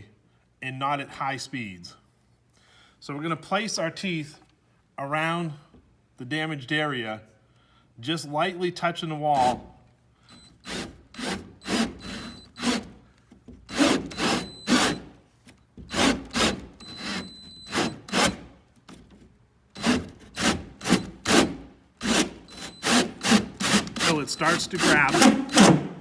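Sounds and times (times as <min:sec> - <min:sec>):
cutting tool rasping drywall: 0:10.6 - 0:13.0, 0:13.7 - 0:15.1, 0:15.8 - 0:18.5, 0:19.8 - 0:26.0.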